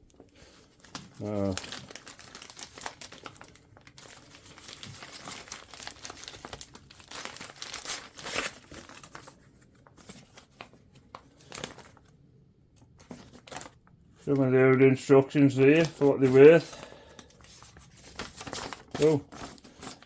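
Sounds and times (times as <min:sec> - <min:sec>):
paper rustling and crinkling: 0:00.2 - 0:12.2, 0:12.8 - 0:20.0.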